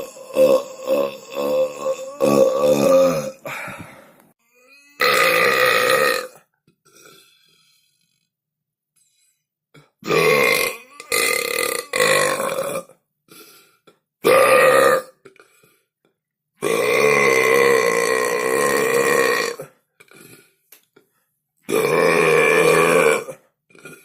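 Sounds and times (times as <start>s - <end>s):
person burping loudly: 0.0s - 4.0s, 4.6s - 7.3s, 9.8s - 15.6s, 16.6s - 20.6s, 21.7s - 24.0s.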